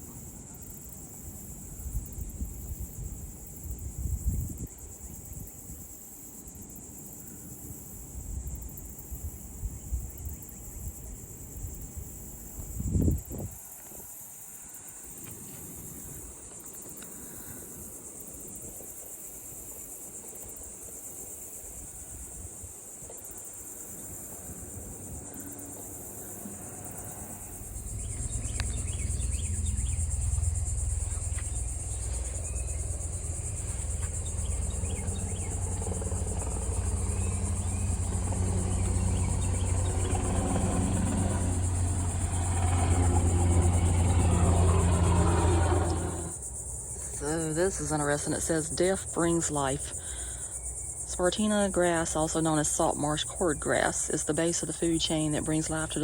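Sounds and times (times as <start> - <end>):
insects buzzing: 0.0 - 56.0
vehicle engine humming: 23.3 - 56.0.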